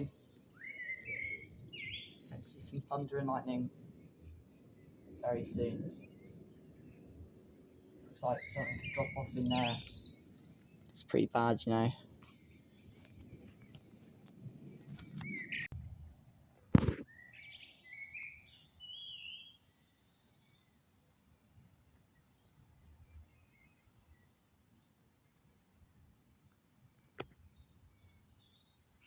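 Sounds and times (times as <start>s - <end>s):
birds chirping: 0.0s - 15.7s.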